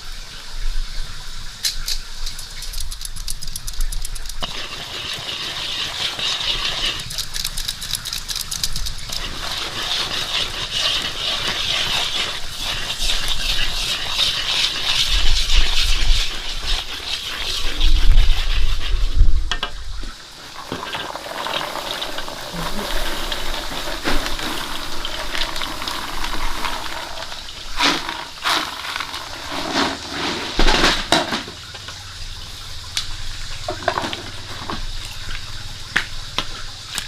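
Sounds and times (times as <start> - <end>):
frying sizzle in a pan: 0.0 - 2.4, 4.4 - 7.2, 8.9 - 37.0
quick rattling clicks: 1.6 - 4.4, 7.0 - 9.2.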